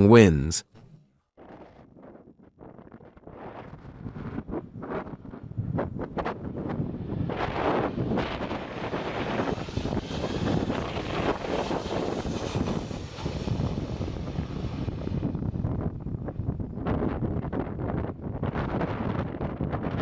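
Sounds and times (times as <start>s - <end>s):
wind noise on microphone: 1.4s - 20.0s
airplane engines roaring: 6.9s - 15.3s.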